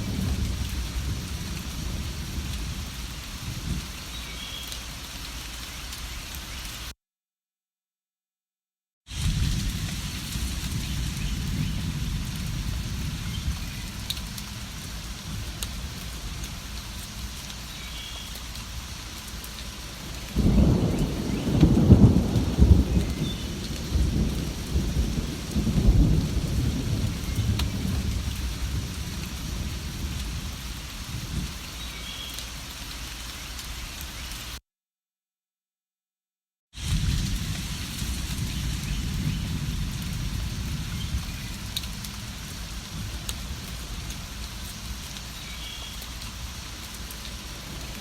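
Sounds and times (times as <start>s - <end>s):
rolling thunder: 0.0s - 3.9s, 9.1s - 16.8s, 20.0s - 31.6s, 36.8s - 44.6s
steady rain: 0.0s - 7.0s, 9.1s - 34.6s, 36.8s - 48.0s.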